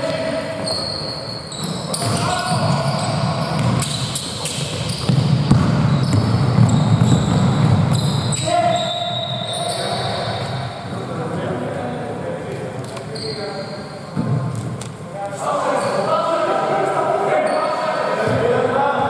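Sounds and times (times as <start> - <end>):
players calling out: 0.0 - 11.0
sneakers squeaking: 0.0 - 11.1, 12.8 - 16.3, 17.4 - 18.5
basketball bouncing on court: 1.6 - 8.4.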